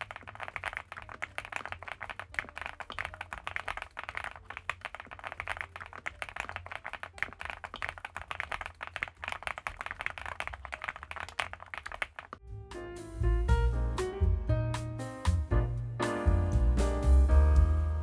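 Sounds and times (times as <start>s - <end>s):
mechanical keyboard typing: 0.0s - 12.4s.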